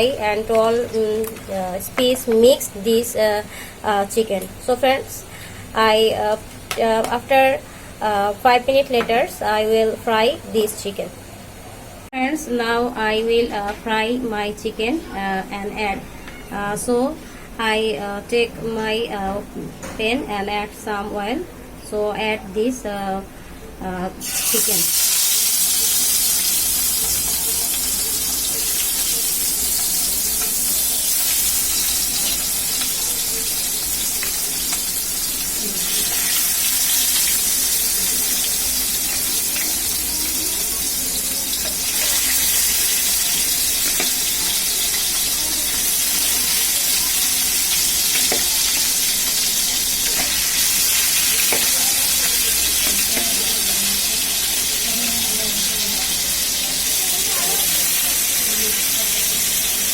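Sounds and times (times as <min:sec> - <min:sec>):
chicken sizzling in hot oil: 0:24.2 - 0:59.9.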